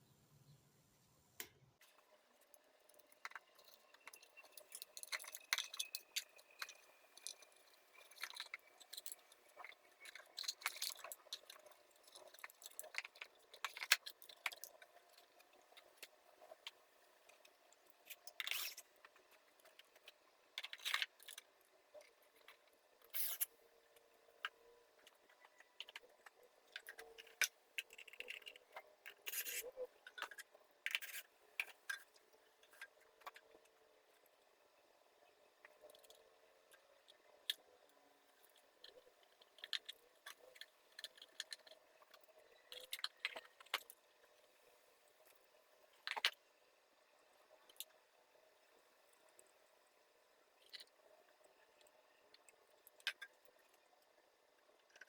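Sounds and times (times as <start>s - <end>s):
plastic parts clicking and scraping: 1.8s - 34.4s, 35.6s - 44.5s, 45.2s - 46.4s.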